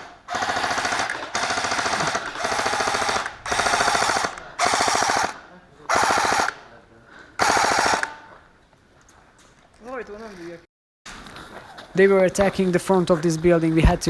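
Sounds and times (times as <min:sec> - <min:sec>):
airsoft rifle firing bursts: 0:00.0 - 0:06.7, 0:07.4 - 0:08.3.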